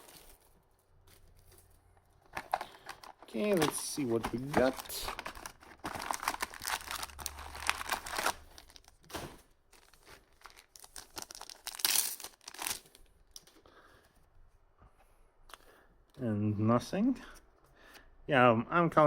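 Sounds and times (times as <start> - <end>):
card pack wrapper tearing and crinkling: 2.3 - 13.5.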